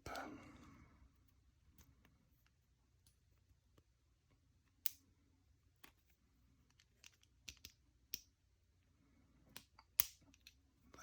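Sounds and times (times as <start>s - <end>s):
small metallic clicks and taps: 6.6s - 8.3s, 9.5s - 10.6s.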